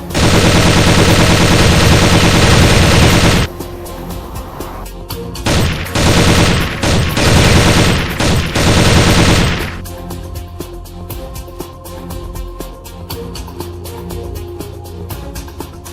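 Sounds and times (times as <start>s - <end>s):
automatic gunfire: 0.0s - 3.5s, 5.5s - 9.8s
background music: 0.0s - 15.9s.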